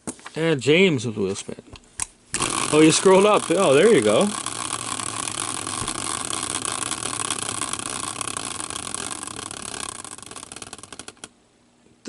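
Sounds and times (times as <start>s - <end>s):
prize wheel clicking: 2.4s - 11.3s.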